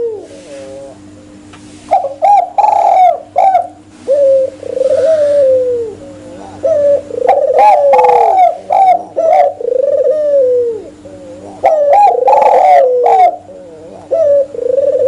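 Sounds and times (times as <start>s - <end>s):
doves cooing: 0.0s - 15.0s.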